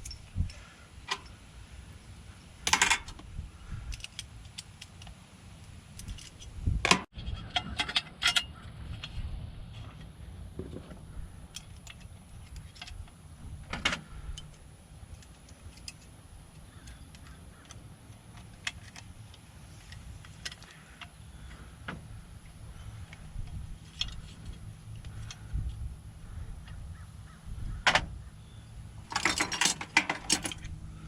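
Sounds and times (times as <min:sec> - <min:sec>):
metallic clicks of keys and lock parts: 0:00.0 - 0:01.4, 0:02.7 - 0:03.2, 0:03.8 - 0:05.2, 0:05.9 - 0:08.5, 0:11.5 - 0:21.5, 0:29.0 - 0:30.8
steady low rumble: 0:00.0 - 0:31.0.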